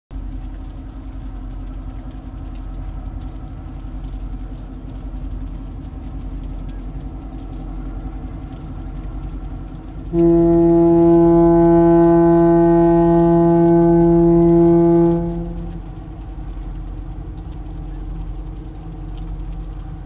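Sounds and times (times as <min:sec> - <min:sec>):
boat engine rumbling: 0:00.1 - 0:20.0
faint small ticks: 0:00.2 - 0:20.0.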